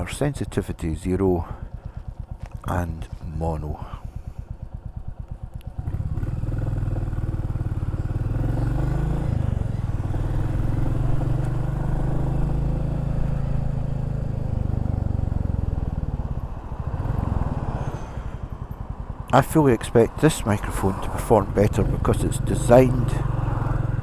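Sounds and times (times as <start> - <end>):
motorcycle engine: 0.0 - 24.0.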